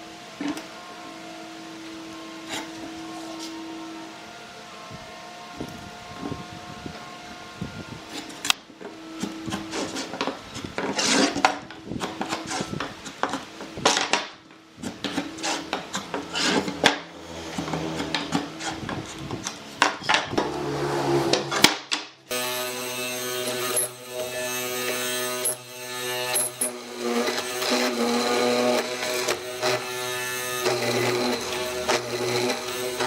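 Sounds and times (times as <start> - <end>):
buzzing machine: 22.3 - 33.0.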